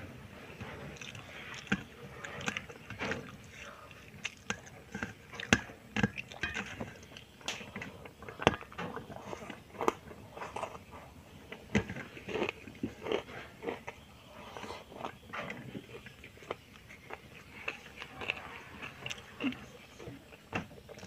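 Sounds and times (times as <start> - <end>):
crunchy chewing: 0.6 - 21.0.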